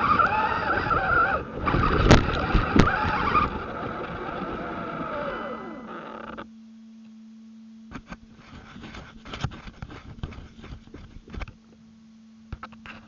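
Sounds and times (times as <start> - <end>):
electric drive motor: 0.0 - 6.6
low electrical hum: 0.0 - 13.0.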